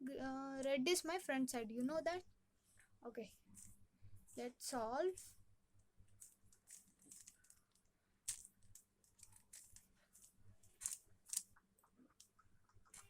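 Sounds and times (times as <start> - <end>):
puzzle cube plastic clicks: 6.2 - 11.6.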